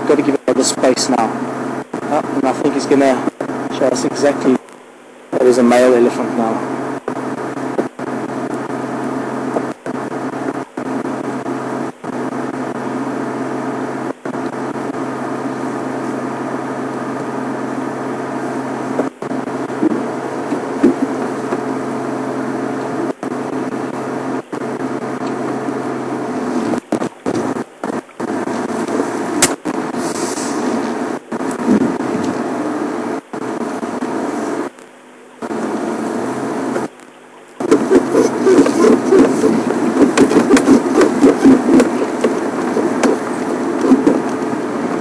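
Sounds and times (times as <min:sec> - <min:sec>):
vehicle engine idling: 0:37.6 - 0:45.0.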